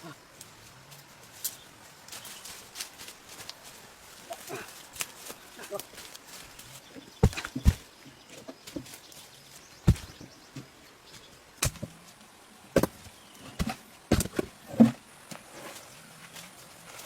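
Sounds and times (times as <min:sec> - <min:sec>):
wood being chopped: 0:07.2 - 0:07.9, 0:09.9 - 0:10.2, 0:11.6 - 0:11.9, 0:12.8 - 0:15.0.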